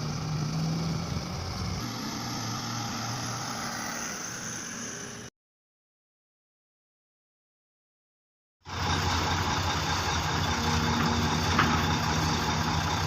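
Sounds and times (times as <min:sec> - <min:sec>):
excavator diesel engine running: 0:00.0 - 0:05.3, 0:08.6 - 0:13.0.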